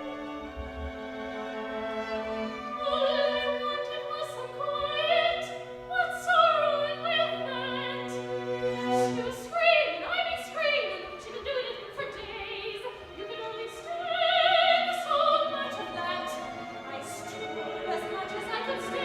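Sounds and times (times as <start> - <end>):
instrumental accompaniment: 0.0 - 6.0
soprano singing opera: 2.6 - 8.3, 9.0 - 19.0.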